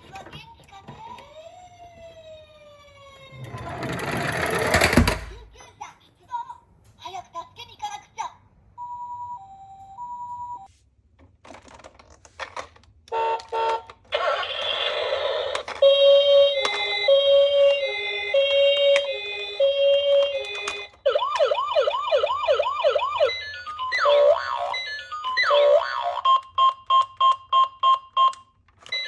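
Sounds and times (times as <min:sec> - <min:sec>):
two-tone hi-lo siren: 0:15.8 - 0:26.5
fast wailing siren: 0:21.1 - 0:26.2
toy two-note beep: 0:23.0 - 0:29.0.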